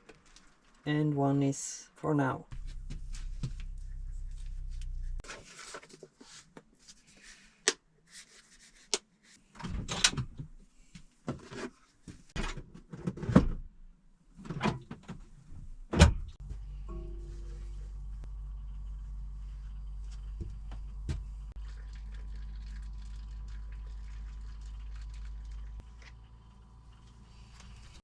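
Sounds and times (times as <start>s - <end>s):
low hum: 2.4s - 5.2s, 16.2s - 28.0s.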